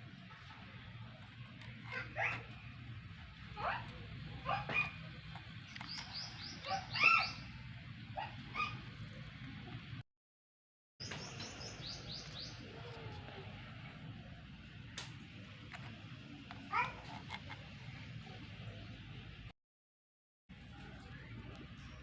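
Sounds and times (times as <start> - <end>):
birds chirping: 0.0 - 9.9, 11.0 - 19.5.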